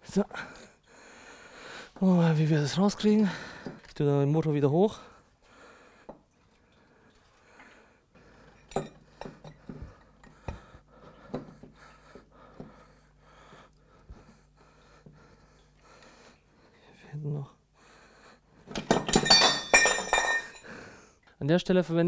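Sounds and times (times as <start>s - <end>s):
faint steady hum: 4.8s - 21.4s.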